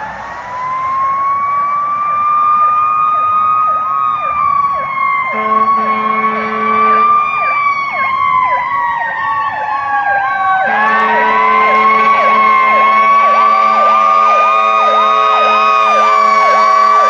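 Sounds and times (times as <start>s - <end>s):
mechanical siren wailing: 0.0s - 17.0s
electronic siren sweeping rapidly: 0.6s - 17.0s
steady horn blast: 5.3s - 7.2s, 10.6s - 17.0s.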